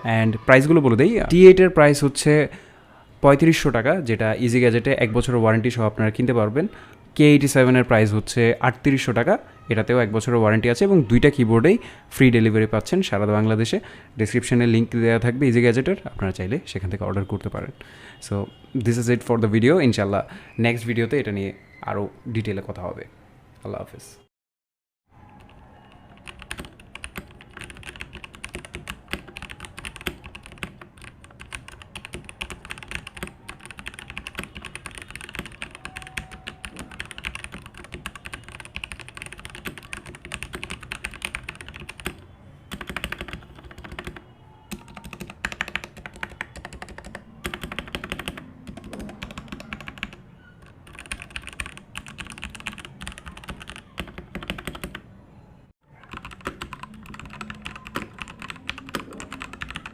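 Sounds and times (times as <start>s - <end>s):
mechanical keyboard typing: 25.3s - 55.0s, 56.0s - 59.9s.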